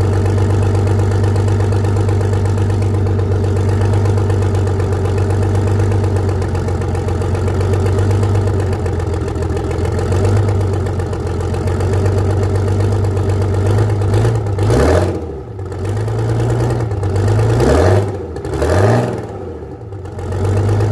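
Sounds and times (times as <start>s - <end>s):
diesel engine running: 0.0s - 20.9s
diesel engine revving: 13.6s - 20.9s.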